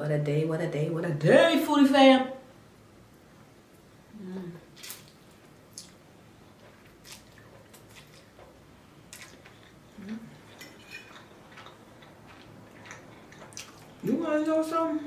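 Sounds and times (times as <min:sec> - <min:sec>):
wet eating sounds: 0:04.6 - 0:14.3.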